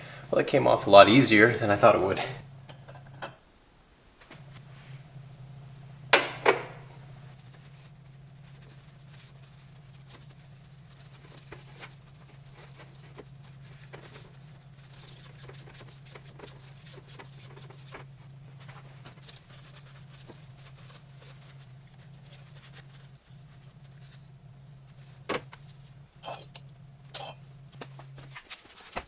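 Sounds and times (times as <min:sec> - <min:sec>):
electrical hum: 0:00.0 - 0:29.0
small parts and tools clicking: 0:26.2 - 0:27.4.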